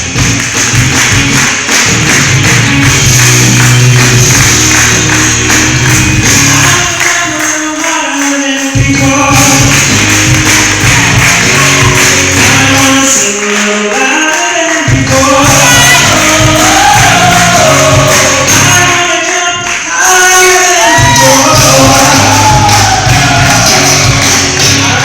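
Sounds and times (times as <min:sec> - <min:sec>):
tambourine shaking: 0:00.0 - 0:14.2
gospel band playing: 0:00.0 - 0:25.0
person singing: 0:06.2 - 0:25.0.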